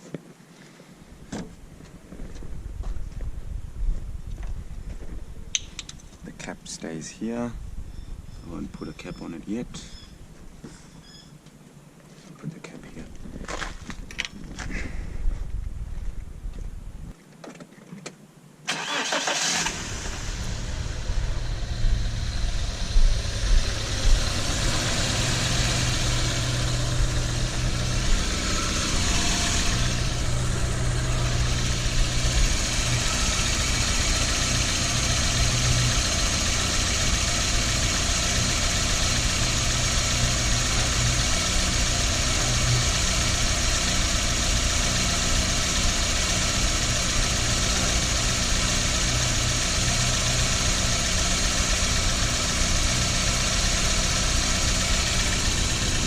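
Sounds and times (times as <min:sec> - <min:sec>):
car engine cranking and idling: 0:18.7 - 0:56.0.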